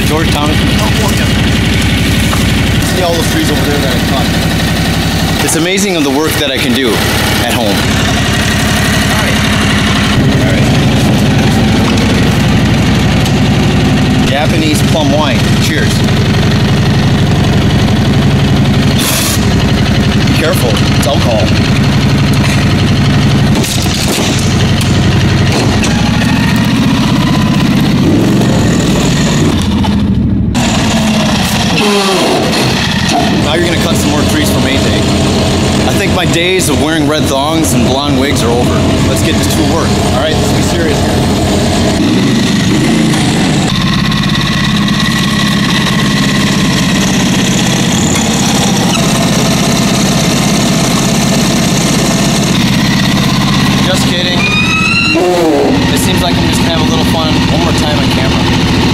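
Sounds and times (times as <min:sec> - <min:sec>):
small gasoline engine idling: 0:00.0 - 0:58.9.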